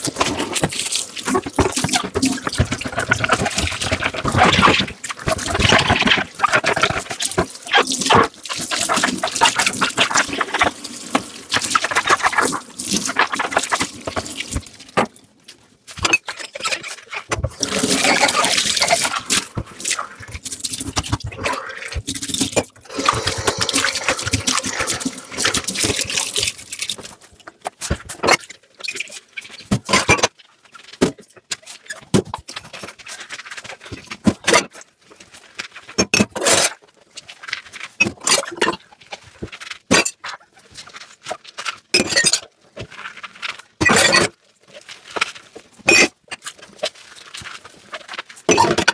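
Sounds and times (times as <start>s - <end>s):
tap water running: 0.0s - 15.2s, 17.4s - 27.4s.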